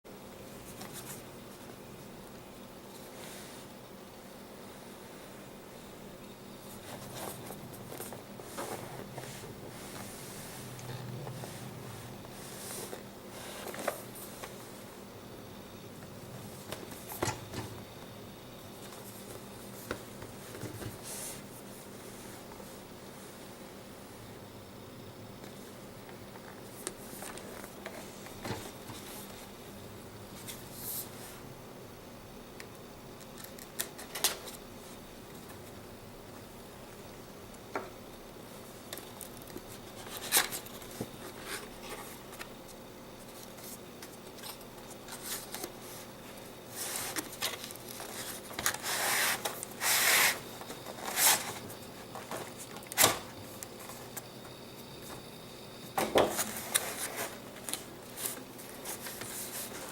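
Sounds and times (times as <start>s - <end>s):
packaging rustling scrapes: 46.7s - 52.7s.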